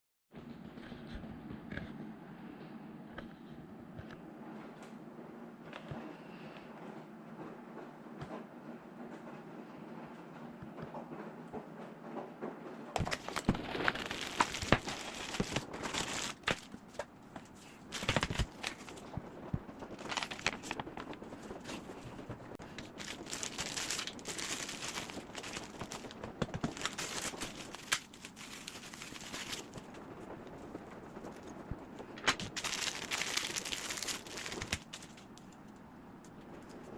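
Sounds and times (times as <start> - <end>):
packaging crinkling: 13.0 - 35.8.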